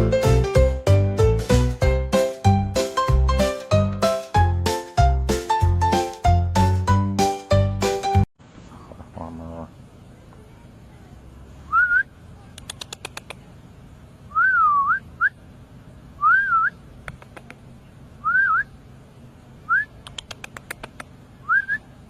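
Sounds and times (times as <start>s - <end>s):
rapid sharp clicks: 12.6s - 13.4s, 17.0s - 17.6s, 20.0s - 21.2s
short whistled notes: 14.3s - 15.4s.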